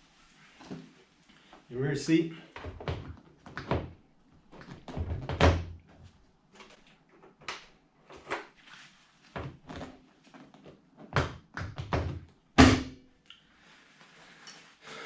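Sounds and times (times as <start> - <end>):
plastic knocks and clunks: 2.6 - 4.0, 4.6 - 5.8.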